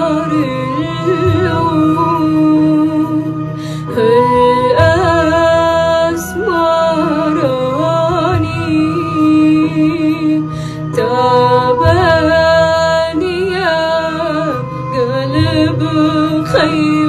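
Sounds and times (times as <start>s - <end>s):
sustained instrumental accompaniment: 0.0s - 17.0s
girl singing: 4.0s - 17.0s.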